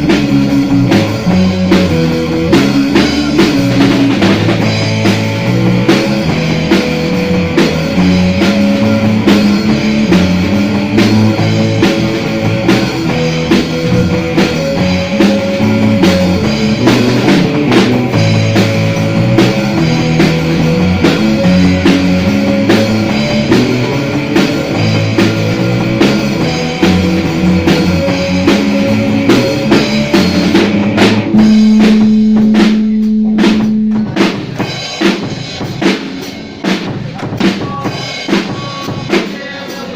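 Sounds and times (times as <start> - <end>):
drums hitting: 0.0 - 39.9
rock band playing: 0.0 - 39.9.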